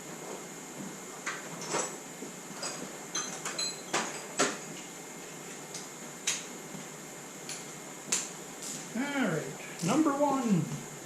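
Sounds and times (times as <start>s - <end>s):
metal tools clinking: 2.6s - 4.3s.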